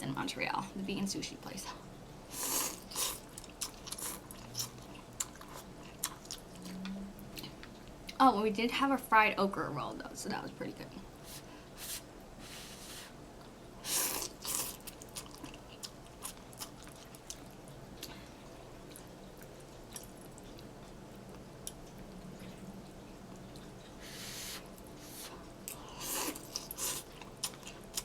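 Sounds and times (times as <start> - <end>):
quiet chewing with mouth clicks: 2.6 - 8.2, 14.2 - 28.0.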